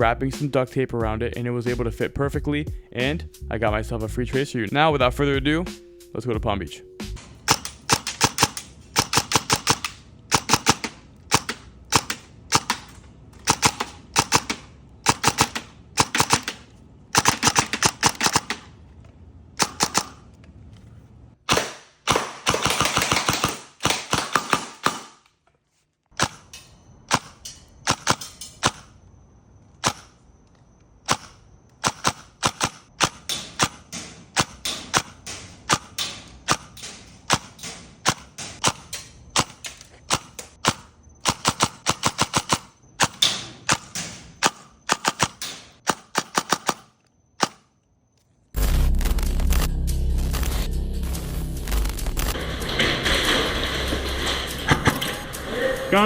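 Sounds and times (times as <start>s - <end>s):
airsoft rifle firing bursts: 7.4s - 18.7s, 19.6s - 20.2s, 21.5s - 25.2s, 31.1s - 47.6s.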